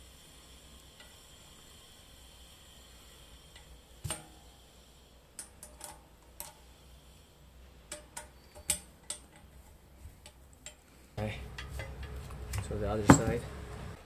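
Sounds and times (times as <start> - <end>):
metal parts clicking and clinking: 5.3 - 6.7, 7.8 - 10.9.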